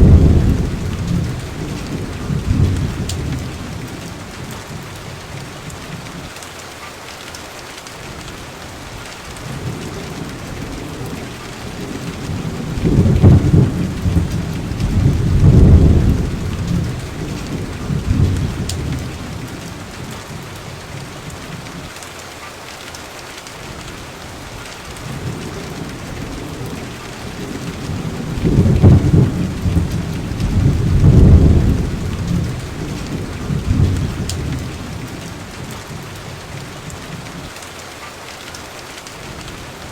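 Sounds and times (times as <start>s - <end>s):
thunder rumbling: 0.0s - 6.2s, 9.4s - 21.8s, 24.9s - 37.4s
steady rain: 0.0s - 39.9s.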